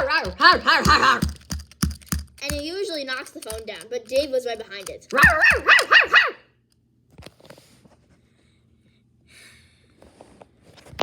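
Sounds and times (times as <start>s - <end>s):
toys clicking and rustling: 0.0s - 6.1s
child imitating dog barking: 5.1s - 6.5s.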